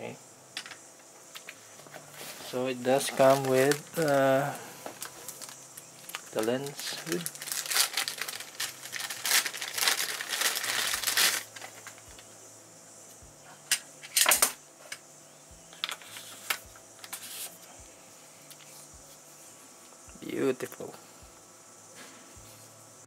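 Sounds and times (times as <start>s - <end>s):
plastic packaging crinkling: 2.4s - 12.2s.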